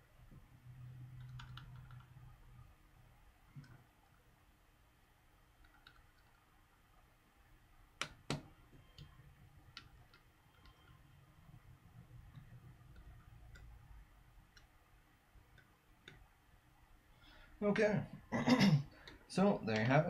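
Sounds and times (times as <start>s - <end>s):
faint low hum: 0.0s - 20.0s
small parts clicking and tapping: 5.6s - 6.5s, 8.0s - 11.1s, 12.3s - 14.8s.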